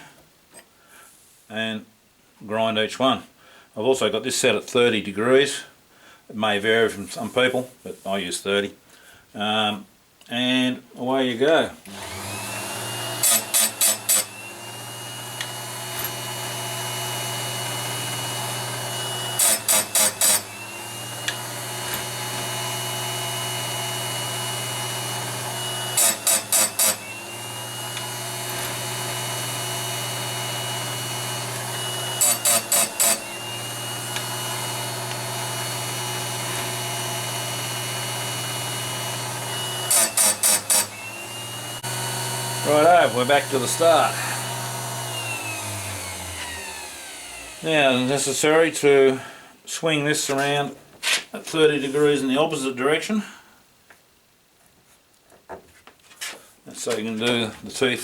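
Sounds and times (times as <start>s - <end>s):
grinding wheel touching metal: 11.9s - 47.7s
chain grinder motor whine: 11.9s - 48.3s.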